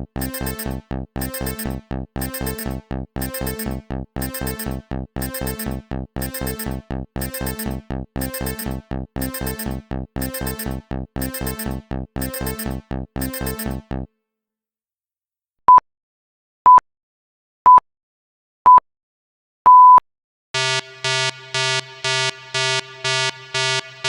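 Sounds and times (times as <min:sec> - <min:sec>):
electronic countdown beeps: 0:00.1 - 0:14.0, 0:20.6 - 0:24.0
fast pulsing electronic effect: 0:00.2 - 0:13.8, 0:20.6 - 0:24.0
pulsing buzzing electronic alarm: 0:00.2 - 0:13.8, 0:20.6 - 0:24.0.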